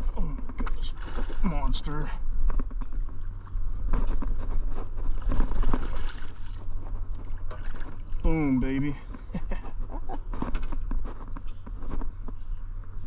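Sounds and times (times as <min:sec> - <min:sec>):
wind rumbling on microphone: 0:00.0 - 0:13.0
water splashing: 0:00.6 - 0:01.7, 0:05.2 - 0:08.6.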